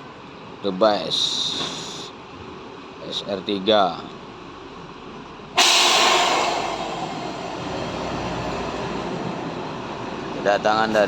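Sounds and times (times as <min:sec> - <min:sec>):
air brakes hissing: 0:01.4 - 0:02.2, 0:05.6 - 0:11.0
low engine rumble: 0:03.7 - 0:11.0.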